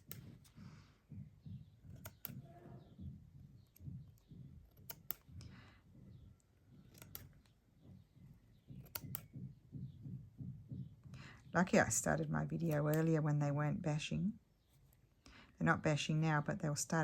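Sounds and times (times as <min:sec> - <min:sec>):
scissors snipping thread: 0:00.0 - 0:00.6, 0:01.8 - 0:02.9, 0:03.6 - 0:05.6, 0:06.4 - 0:07.6, 0:08.7 - 0:09.4, 0:12.6 - 0:13.2.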